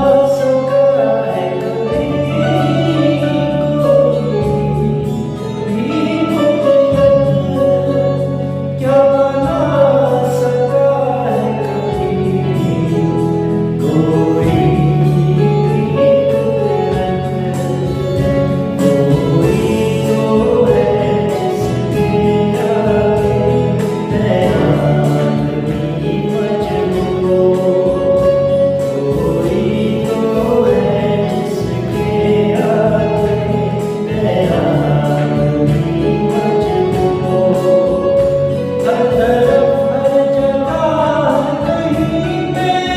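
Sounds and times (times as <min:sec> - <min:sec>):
instrumental accompaniment: 0:00.0 - 0:42.9
light beat: 0:00.0 - 0:42.9
group of voices singing: 0:18.8 - 0:42.9.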